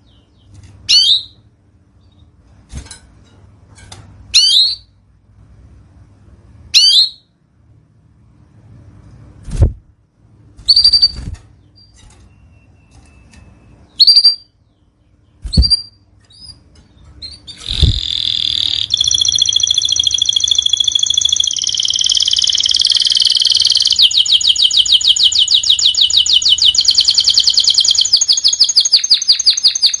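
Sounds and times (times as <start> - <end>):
canary singing trills: 0.0 - 1.4, 4.3 - 5.0, 10.6 - 30.0.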